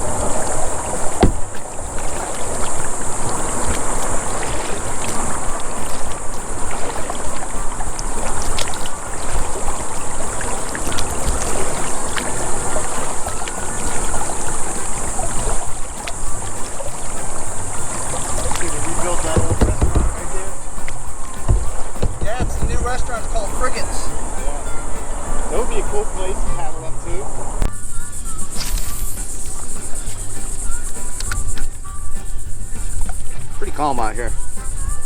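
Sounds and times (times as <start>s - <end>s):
constant high-pitched hiss: 0.0s - 35.0s
water lapping and trickling: 0.0s - 35.0s
small knocks on kayak: 0.3s - 24.2s.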